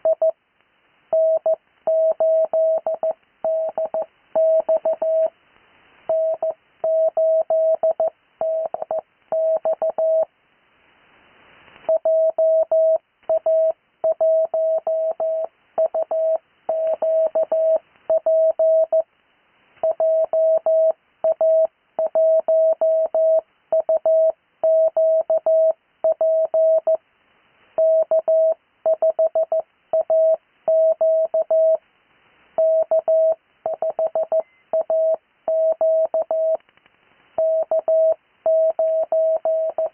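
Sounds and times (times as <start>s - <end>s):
morse code tone: 6.1s - 10.3s, 37.4s - 39.9s.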